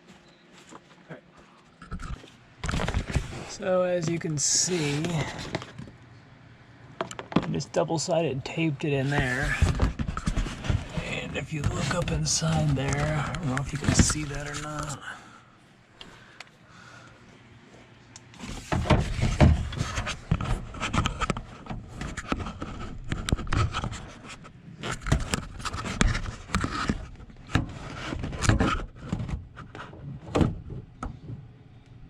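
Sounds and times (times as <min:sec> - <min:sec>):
knocking and scraping inside metal door: 0:18.5 - 0:24.2.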